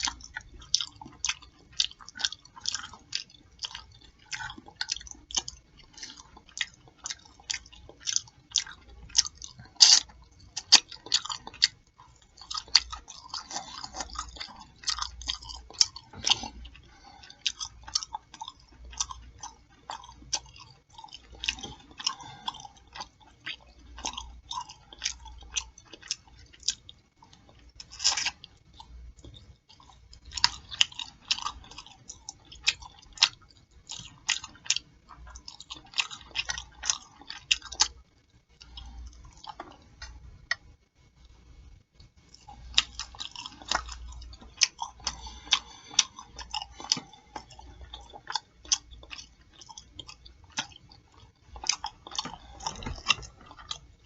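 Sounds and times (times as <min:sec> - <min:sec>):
chewing with lip smacking: 0:00.0 - 0:40.7, 0:42.0 - 0:54.0.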